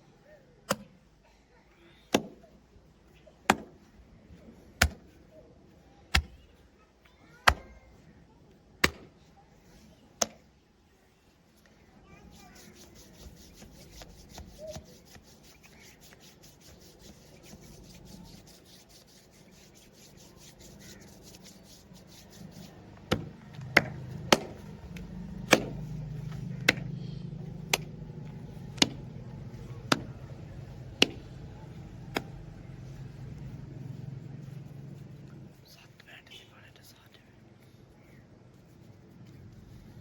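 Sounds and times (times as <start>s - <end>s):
hands rubbing during massage: 12.2s - 26.9s, 27.6s - 35.6s.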